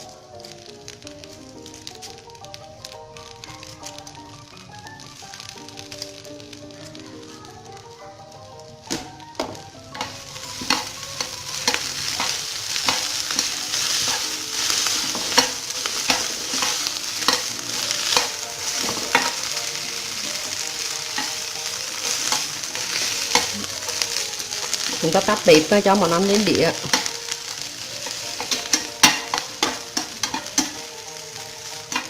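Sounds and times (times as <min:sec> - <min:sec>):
noodles sizzling in a pan: 0:00.0 - 0:32.0
utensil clacking against pan: 0:08.9 - 0:19.6, 0:20.2 - 0:25.1, 0:26.8 - 0:27.2, 0:28.0 - 0:30.9.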